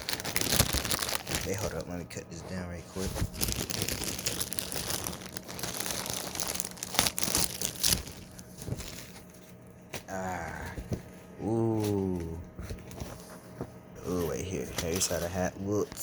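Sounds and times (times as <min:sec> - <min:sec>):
packaging crinkling and tearing: 0:00.0 - 0:02.1, 0:03.0 - 0:09.5.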